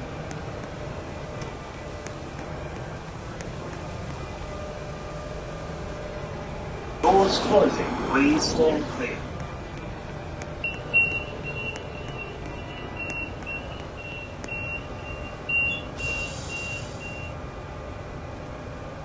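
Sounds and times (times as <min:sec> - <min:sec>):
train rumbling: 0:00.0 - 0:19.0
train door warning beeps: 0:10.6 - 0:17.4.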